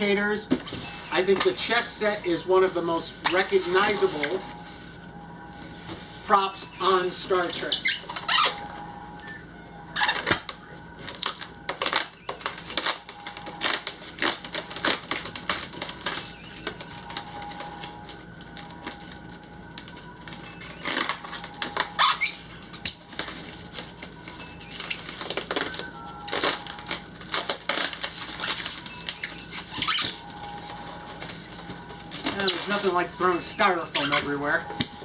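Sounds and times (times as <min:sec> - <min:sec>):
styrofoam crackling and squeaking: 0:00.0 - 0:35.0.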